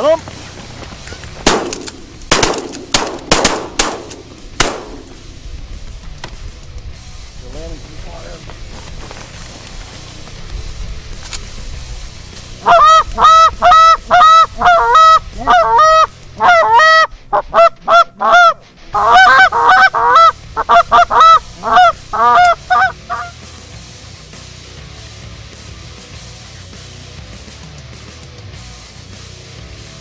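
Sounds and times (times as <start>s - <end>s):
goose calls honking and clucking: 12.6s - 23.4s.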